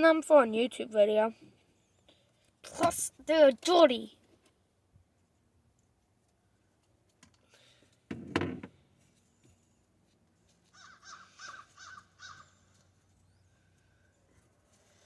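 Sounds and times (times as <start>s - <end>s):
bird cawing: 10.7s - 12.8s.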